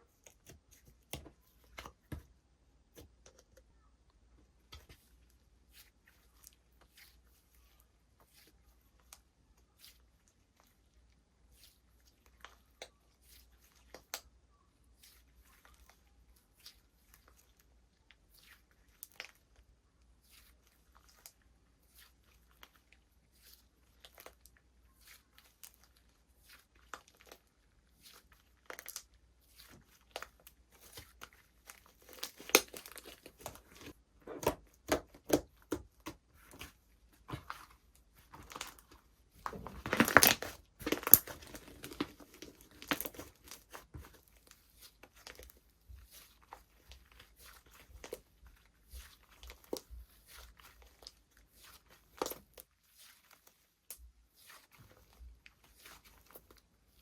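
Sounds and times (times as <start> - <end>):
crinkling and tearing: 23.4 - 57.0.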